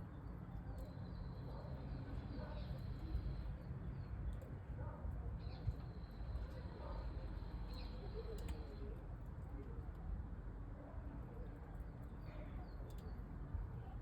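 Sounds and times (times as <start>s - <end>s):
wood fire burning in a stove: 8.0s - 10.1s.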